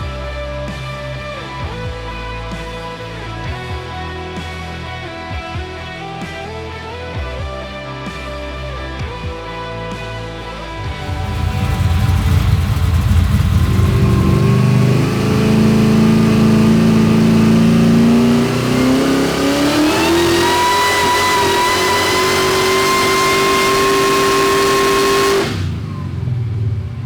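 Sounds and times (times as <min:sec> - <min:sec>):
engine at full throttle: 0:11.0 - 0:27.0.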